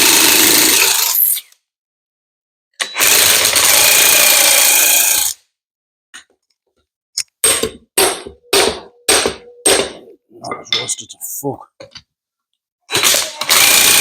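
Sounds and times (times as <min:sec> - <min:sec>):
power tool running in bursts: 0:13.0 - 0:14.0.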